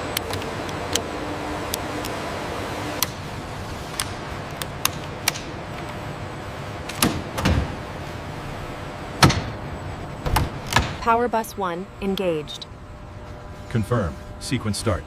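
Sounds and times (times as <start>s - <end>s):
industrial hangar background noise: 0.0s - 15.0s.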